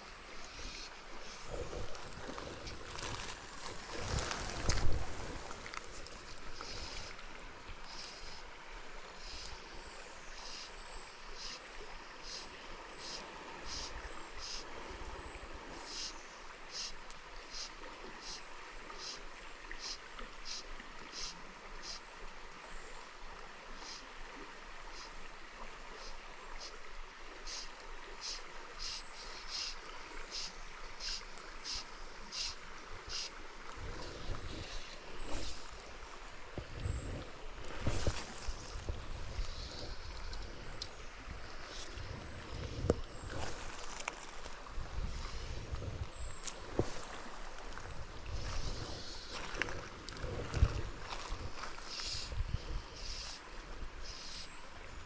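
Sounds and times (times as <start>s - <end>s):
wind rumble on microphone: 1.4s - 5.7s, 33.7s - 35.6s, 36.5s - 43.8s, 44.5s - 47.1s, 47.7s - 53.1s
river water rushing: 23.1s - 52.3s
wind buffeting microphone: 44.6s - 47.1s, 47.8s - 51.7s.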